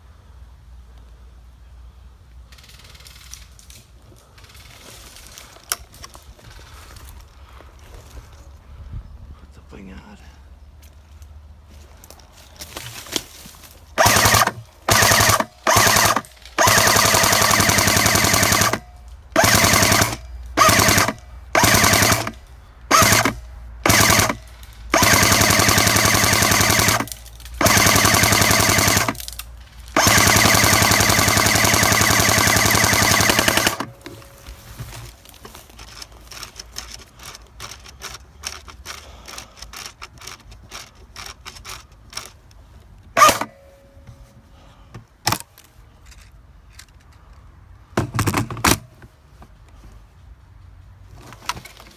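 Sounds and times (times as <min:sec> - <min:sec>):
toy gun firing bursts: 0:14.0 - 0:29.3, 0:30.0 - 0:34.0, 0:43.2 - 0:43.5.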